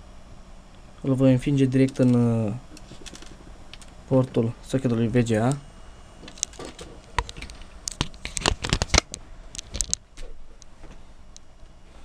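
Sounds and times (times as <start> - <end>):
metal wire clicks and scrapes: 6.2 - 10.0.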